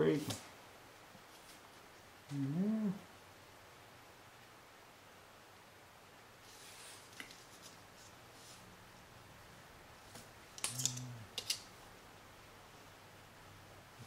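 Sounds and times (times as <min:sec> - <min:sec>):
small parts clicking into place: 0:10.6 - 0:11.7.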